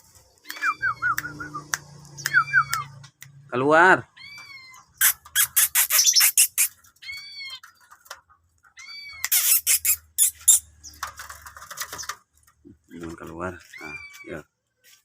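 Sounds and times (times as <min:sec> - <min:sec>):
birds chirping: 0:00.0 - 0:14.4
rapid sharp chirps or rustles: 0:04.4 - 0:08.3, 0:09.1 - 0:12.6.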